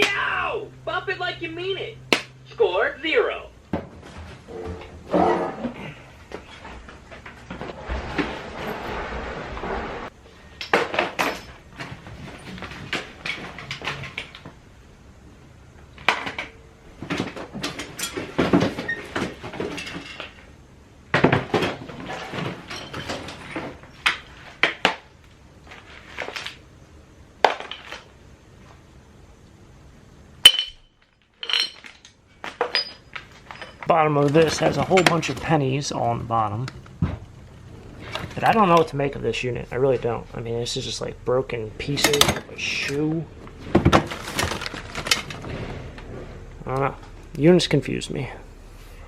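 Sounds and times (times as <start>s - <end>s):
small objects clattering and clinking: 30.4s - 35.5s.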